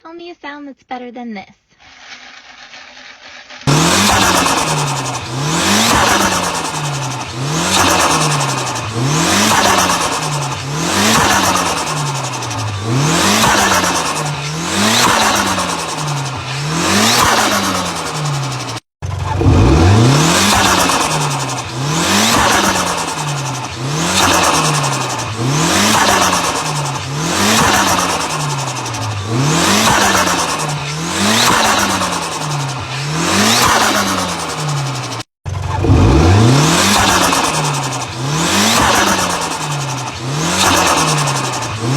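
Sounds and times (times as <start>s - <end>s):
diesel truck engine revving: 3.6s - 41.9s.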